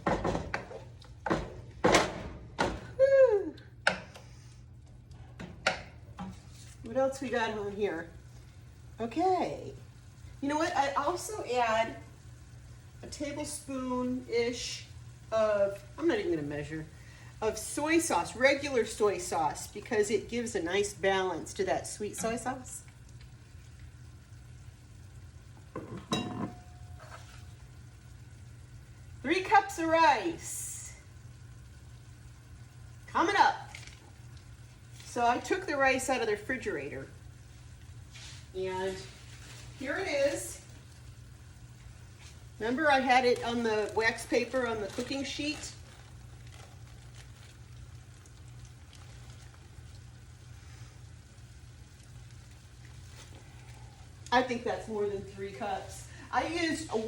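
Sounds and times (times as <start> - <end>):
low steady hum: 0.0 - 57.0
food sizzling in a pan: 5.7 - 57.0
wooden spoon scraping a pan: 25.8 - 27.6.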